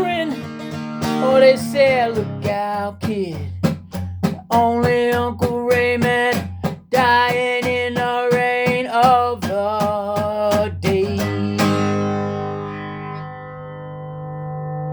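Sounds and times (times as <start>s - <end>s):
acoustic guitar strumming: 0.0s - 14.9s.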